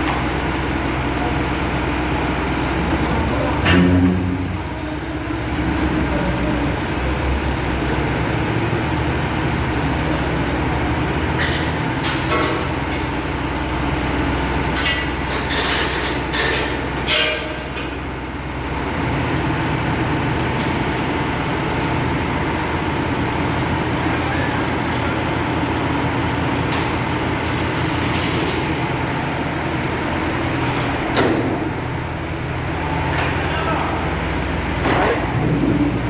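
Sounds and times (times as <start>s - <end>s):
heavy engine running: 0.0s - 36.0s
sharp metallic knocks: 3.6s - 4.6s.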